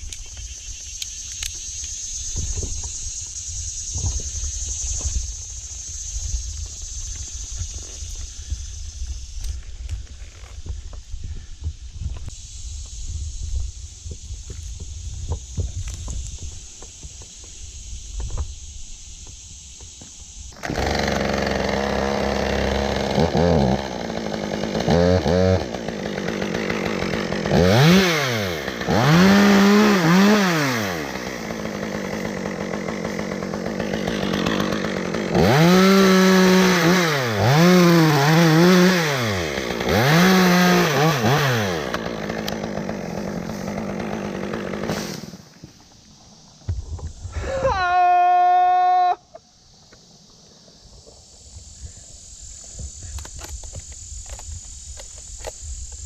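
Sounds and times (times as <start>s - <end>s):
chainsaw revving and cutting wood: 20.6s - 45.6s.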